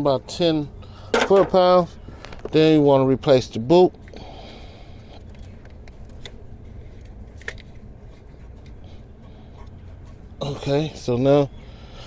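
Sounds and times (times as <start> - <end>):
rubbing and handling noise: 1.2 - 1.8.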